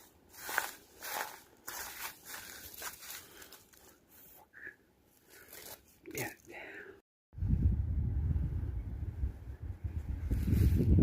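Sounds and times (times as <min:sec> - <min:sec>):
footsteps crunching: 0:00.0 - 0:04.3.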